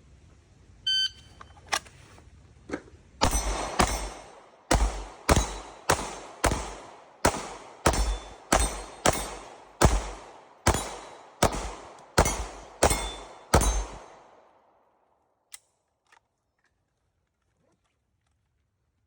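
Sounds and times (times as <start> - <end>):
metallic pings on steel targets: 3.2 - 14.3
gunshots with echo: 3.2 - 14.6.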